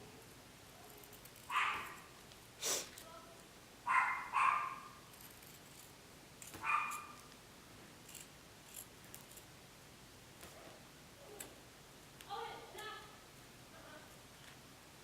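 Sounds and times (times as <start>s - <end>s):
puppy yelping: 1.5s - 2.0s, 3.9s - 5.0s, 6.6s - 7.2s.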